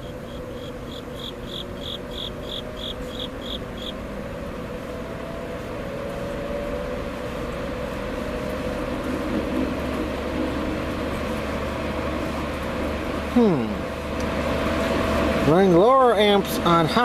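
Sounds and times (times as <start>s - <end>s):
box fan running: 0.0s - 17.0s.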